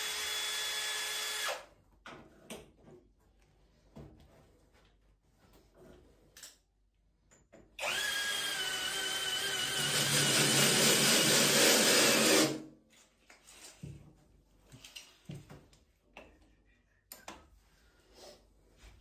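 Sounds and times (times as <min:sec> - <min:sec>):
electric drill whining: 0:00.0 - 0:01.6, 0:07.8 - 0:12.6.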